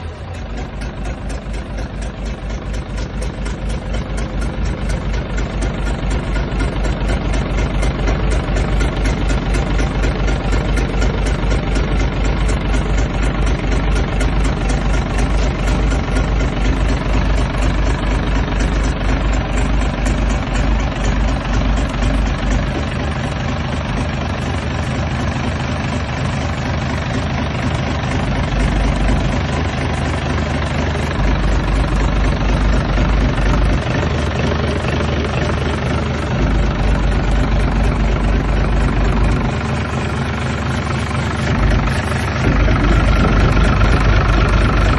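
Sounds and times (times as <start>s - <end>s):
diesel engine running: 0.0s - 44.9s.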